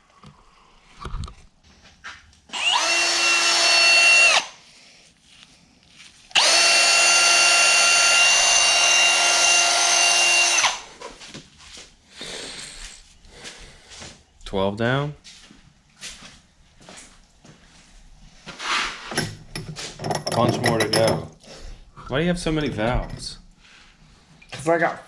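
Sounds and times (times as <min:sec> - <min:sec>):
power drill running: 0:02.5 - 0:04.6, 0:06.3 - 0:11.0.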